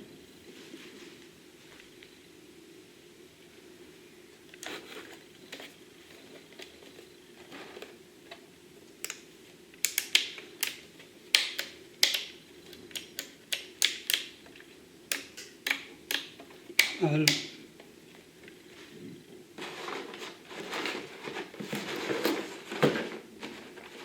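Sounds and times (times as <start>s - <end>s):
plastic controls clicking: 9.8s - 17.6s.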